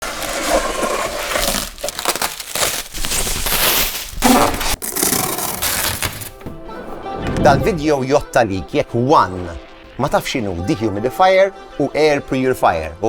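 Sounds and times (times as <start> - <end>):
dense crinkling and crushing: 0.0 - 6.7.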